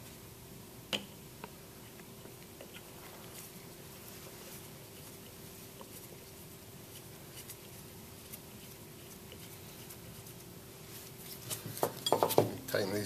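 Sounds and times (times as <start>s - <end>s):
steady low hum: 0.0s - 13.0s
parts tapping and scraping: 11.5s - 12.6s.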